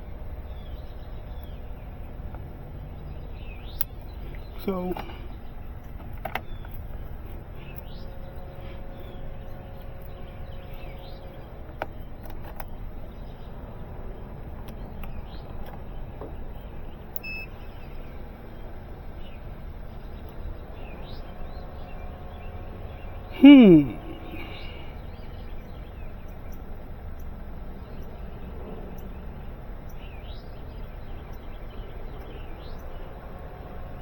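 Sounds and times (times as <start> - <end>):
steady low rumble: 0.0 - 23.3.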